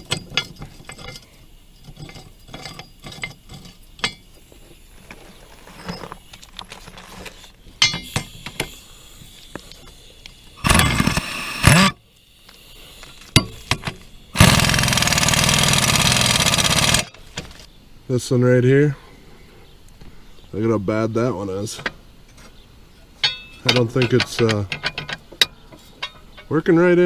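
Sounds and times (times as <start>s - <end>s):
hand tools clinking on metal: 0.0s - 4.3s, 7.8s - 8.8s, 23.1s - 26.8s
power tool bursts: 10.6s - 12.0s, 13.2s - 17.1s.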